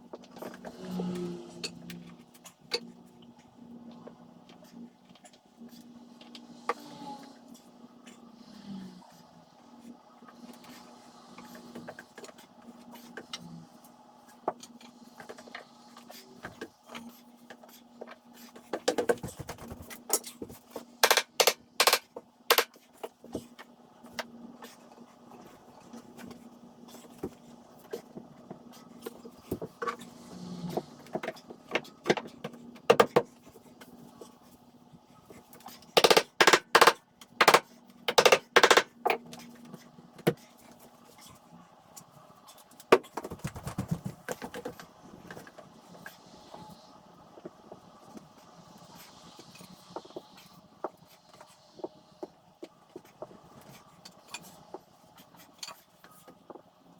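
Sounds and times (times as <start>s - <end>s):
wooden parts knocking: 21.0s - 22.7s, 36.0s - 38.9s.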